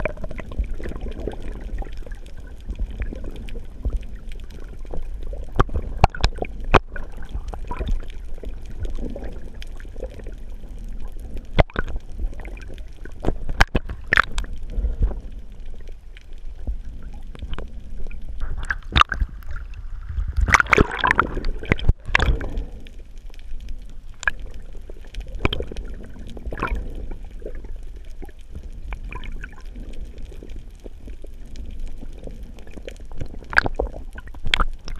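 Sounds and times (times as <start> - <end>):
muffled water sloshing and gurgling: 0.0 - 34.9
gurgling water rush: 16.6 - 22.9.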